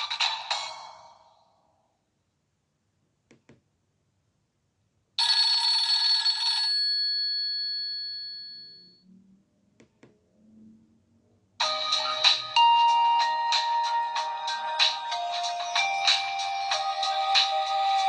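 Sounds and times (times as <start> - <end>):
rhythmic ringtone melody: 11.6 - 18.0.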